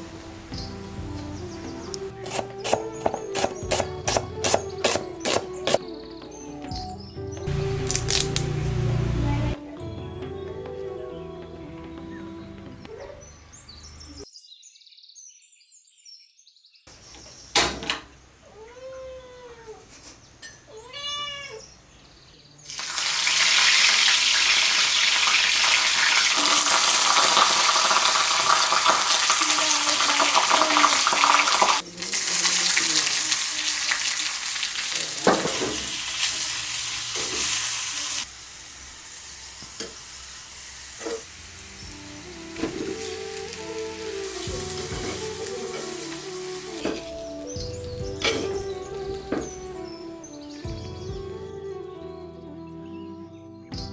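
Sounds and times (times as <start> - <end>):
cat meowing: 18.4 - 19.8, 20.7 - 21.7
food sizzling in hot oil: 22.7 - 47.7.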